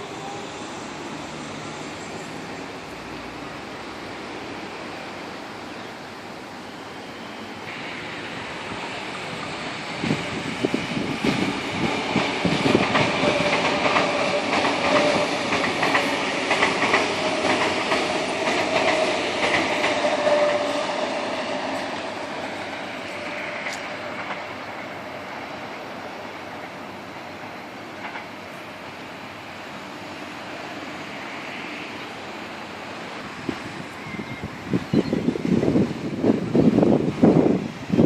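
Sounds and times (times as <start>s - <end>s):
train whine: 0.0s - 38.0s
train wheels clattering: 8.7s - 25.1s.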